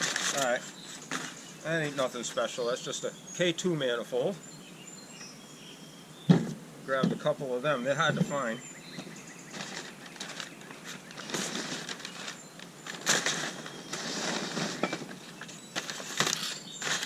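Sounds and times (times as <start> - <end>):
packing material rustling: 0.0 - 1.4, 9.5 - 17.0.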